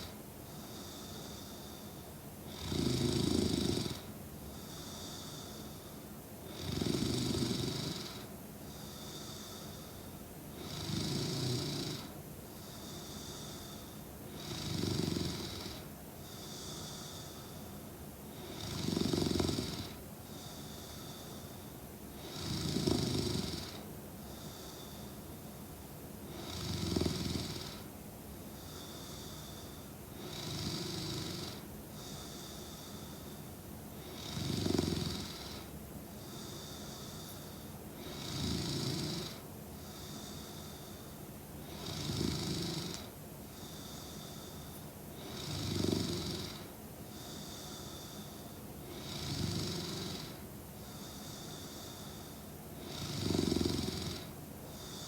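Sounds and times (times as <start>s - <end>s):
soft hissing breath out: 0.0s - 2.2s, 4.5s - 6.2s, 8.2s - 10.2s, 12.0s - 14.1s, 15.7s - 18.6s, 20.2s - 21.9s, 24.2s - 25.8s, 28.5s - 30.4s, 31.2s - 34.0s, 35.0s - 55.0s
woman snoring: 2.5s - 4.1s, 6.5s - 8.3s, 8.9s - 13.6s, 14.3s - 17.4s, 18.3s - 21.5s, 22.2s - 25.1s, 26.3s - 27.9s, 28.6s - 33.2s, 34.0s - 55.0s.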